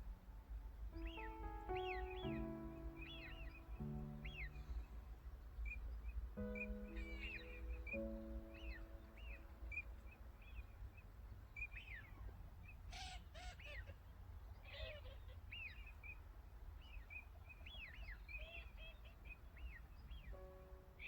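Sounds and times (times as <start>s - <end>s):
low ambient rumble: 0.0s - 10.8s
birds chirping: 0.0s - 16.2s
harsh rasping bird calls: 1.0s - 5.0s, 5.7s - 10.0s, 12.9s - 14.0s.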